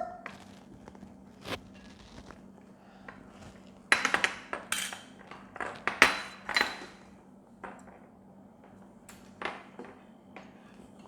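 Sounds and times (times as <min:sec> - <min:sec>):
utensils clinking against a bowl: 0:03.9 - 0:08.0.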